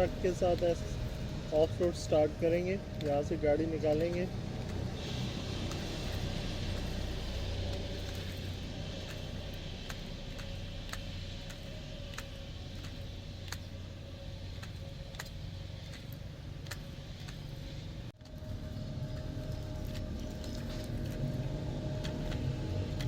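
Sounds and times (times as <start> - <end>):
light ticks: 5.7 - 17.8.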